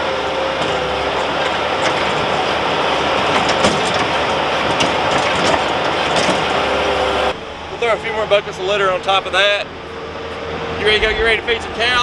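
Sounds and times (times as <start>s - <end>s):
loader engine running: 0.0s - 12.0s
sharp knocks and clanks: 0.6s - 6.8s, 11.0s - 12.0s.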